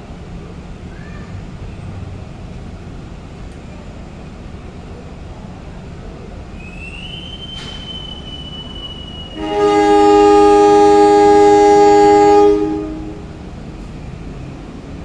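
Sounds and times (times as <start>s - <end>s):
thin high whistle: 6.6s - 11.2s
diesel locomotive horn: 6.7s - 13.5s.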